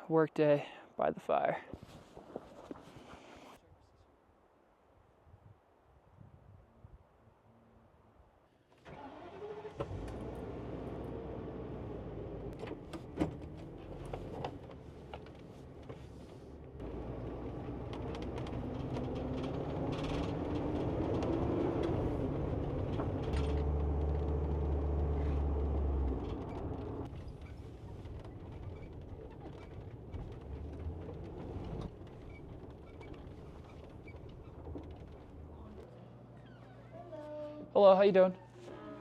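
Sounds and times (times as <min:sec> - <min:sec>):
vehicle engine running: 0:09.9 - 0:35.9.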